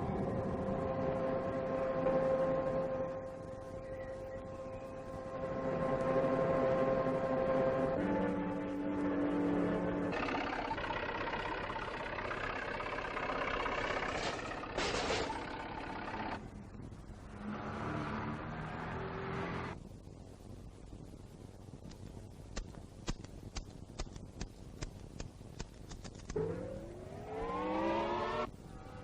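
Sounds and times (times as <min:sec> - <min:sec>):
motor running and revving: 0:26.4 - 0:29.0.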